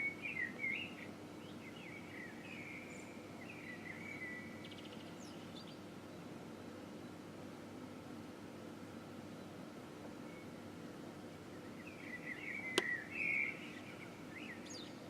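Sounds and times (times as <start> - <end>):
blackbird singing: 0.0 - 5.8, 11.5 - 15.0.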